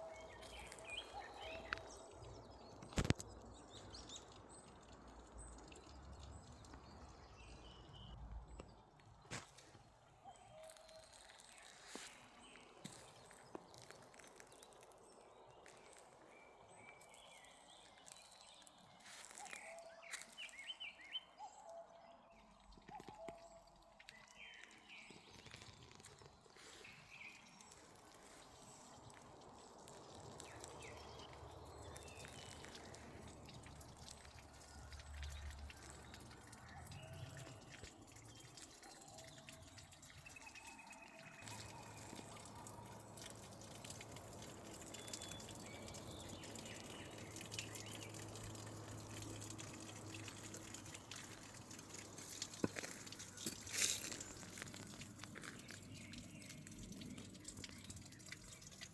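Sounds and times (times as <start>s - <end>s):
bird chirps: 0.0s - 8.7s.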